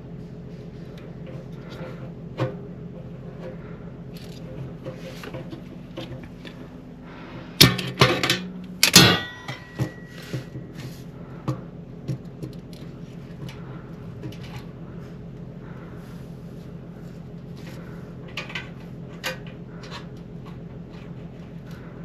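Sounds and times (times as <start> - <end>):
steady low hum: 0.0 - 22.0
sharp metallic clicks and knocks: 7.6 - 10.0.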